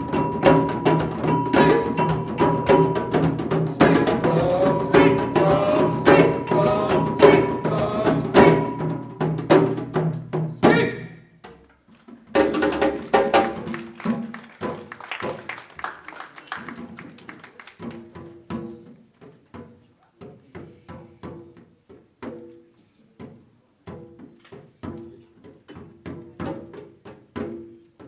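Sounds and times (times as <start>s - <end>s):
hand percussion strikes: 0.0s - 10.8s.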